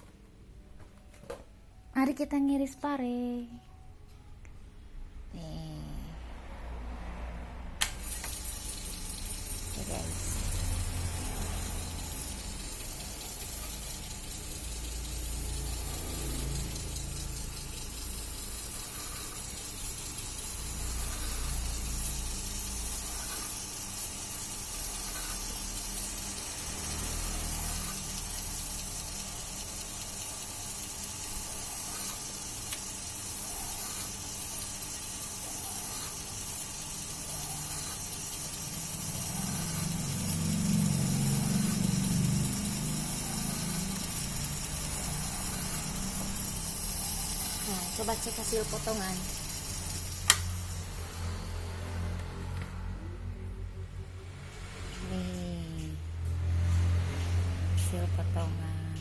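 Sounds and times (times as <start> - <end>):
slicing machine motor humming: 7.8 - 53.4
hiss: 7.9 - 52.2.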